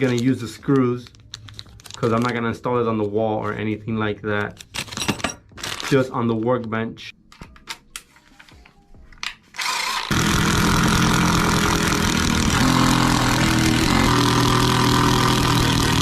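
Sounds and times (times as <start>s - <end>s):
power drill driving screws: 9.6s - 16.0s.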